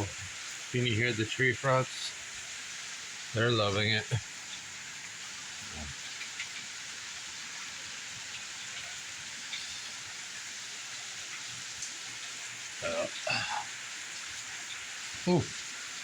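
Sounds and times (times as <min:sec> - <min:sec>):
sharp drips: 0:00.0 - 0:16.0
steady rain falling: 0:00.0 - 0:16.0.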